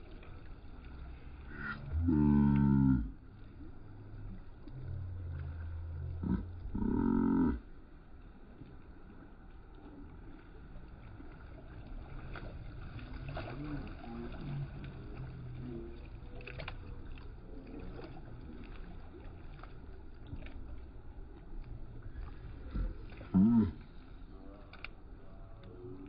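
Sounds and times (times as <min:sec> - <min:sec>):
low steady rumble: 0:00.0 - 0:26.0.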